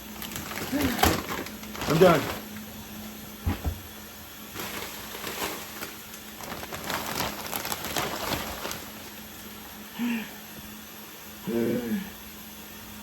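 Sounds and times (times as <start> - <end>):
packaging rustling and crinkling: 0.0 - 2.7, 4.5 - 9.5.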